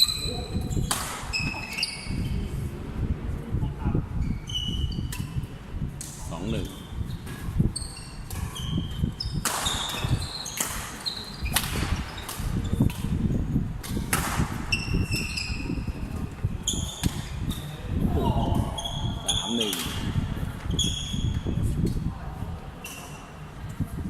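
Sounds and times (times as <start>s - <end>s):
shoes squeaking on court floor: 0.0s - 2.5s, 6.6s - 13.1s, 14.6s - 21.6s, 22.8s - 23.4s.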